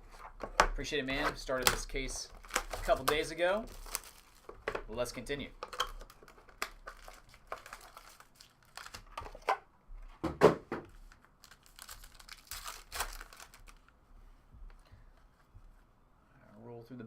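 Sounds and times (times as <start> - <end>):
card pack wrappers tearing: 1.5 - 4.5, 6.0 - 9.1, 11.4 - 13.9.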